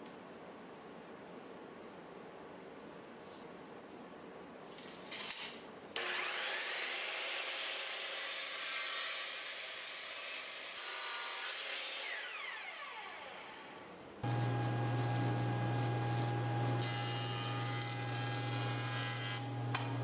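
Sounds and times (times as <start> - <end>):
machine low steady hum: 14.2 - 20.0
power tool whining: 14.2 - 20.0.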